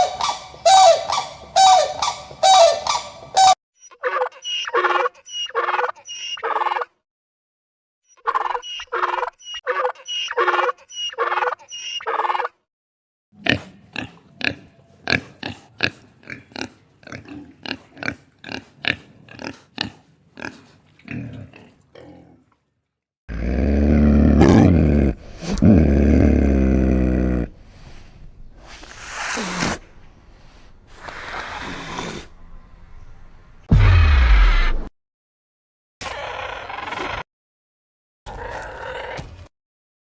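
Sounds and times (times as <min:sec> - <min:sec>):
animal honking calls: 0:00.0 - 0:06.7
animal rapid grunts: 0:23.3 - 0:27.5
loud low animal roar: 0:23.3 - 0:27.6.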